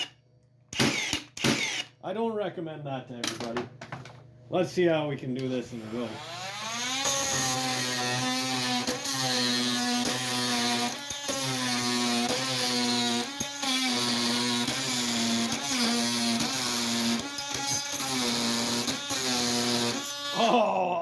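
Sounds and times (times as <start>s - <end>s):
oscillating multi-tool cutting wood: 0.8s - 1.9s, 5.8s - 20.6s.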